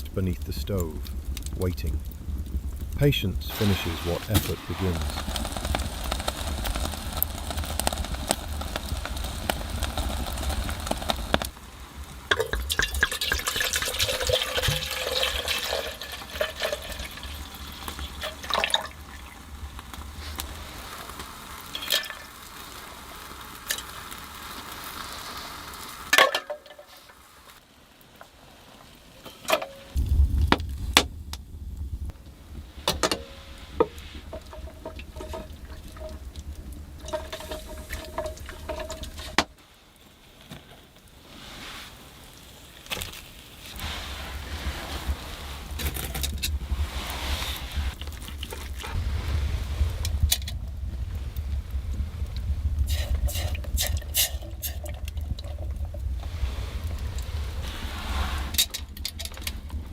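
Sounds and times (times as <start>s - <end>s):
liquid stirred or poured: 12.2s - 27.1s, 32.8s - 39.5s, 43.7s - 50.6s, 52.8s - 59.8s.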